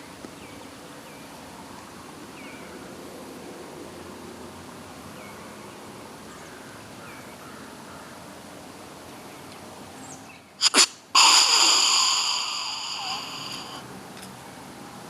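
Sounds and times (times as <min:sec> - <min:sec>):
deer snort-wheeze: 0:10.6 - 0:13.8.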